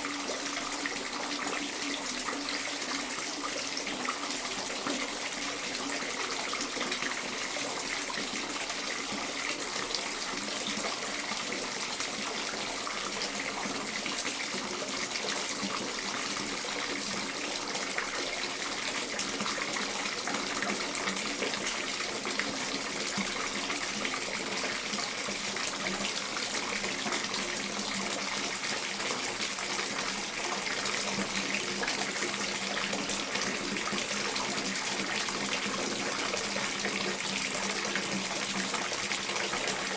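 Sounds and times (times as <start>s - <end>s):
water pouring into bathtub: 0.0s - 39.9s.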